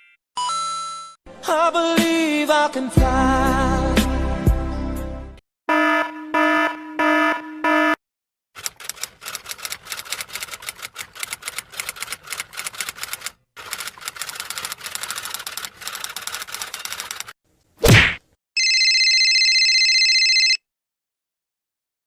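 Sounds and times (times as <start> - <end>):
electronic alarm beeping: 5.7 - 8.0
typewriter keys clacking: 8.6 - 17.4.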